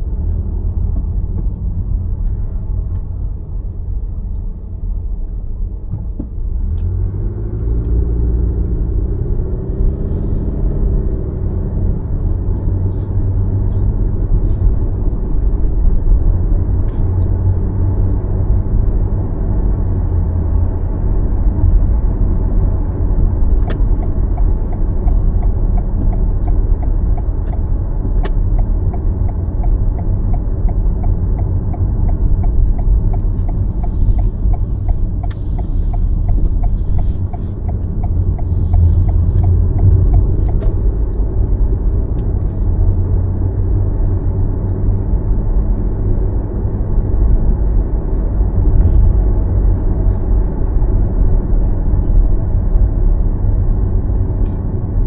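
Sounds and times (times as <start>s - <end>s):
car driving rumble: 0.0s - 55.0s
regular light ticking: 23.6s - 41.2s.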